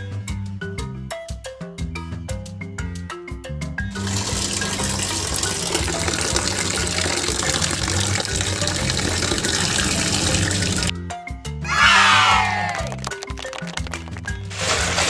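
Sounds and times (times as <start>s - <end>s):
background music: 0.0s - 15.0s
water running from tap: 4.0s - 10.9s.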